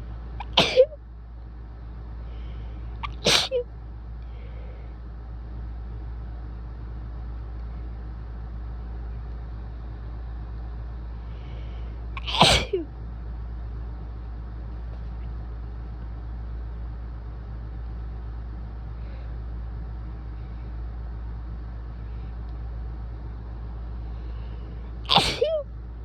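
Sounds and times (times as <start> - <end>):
steady low hum: 0.0 - 26.0
person sneezing: 0.4 - 0.9, 3.0 - 3.6, 12.2 - 12.9, 25.1 - 25.6.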